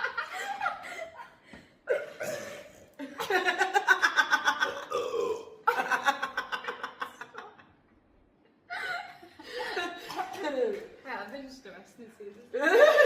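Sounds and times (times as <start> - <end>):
person burping: 4.7 - 5.7.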